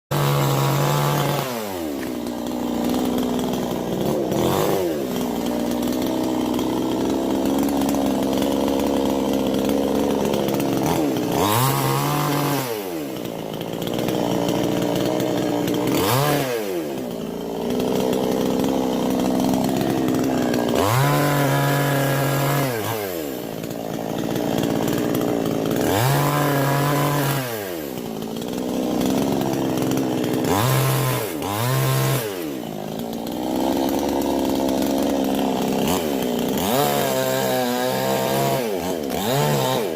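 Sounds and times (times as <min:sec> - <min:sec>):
chainsaw revving: 0:00.1 - 0:39.9.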